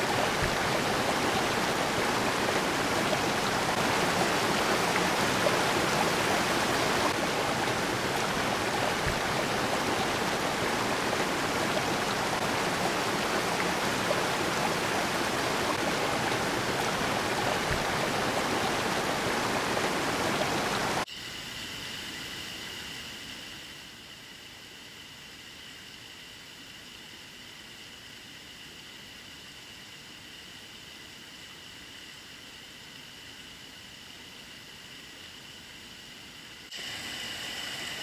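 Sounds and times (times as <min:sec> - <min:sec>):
water rushing over rocks: 0:00.0 - 0:21.1.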